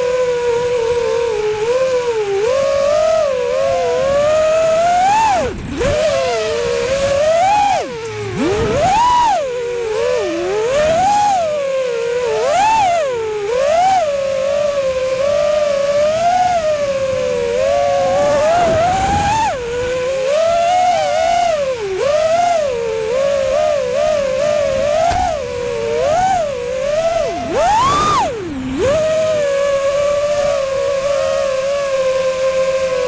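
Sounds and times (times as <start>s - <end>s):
drone motors whining: 0.0s - 33.0s.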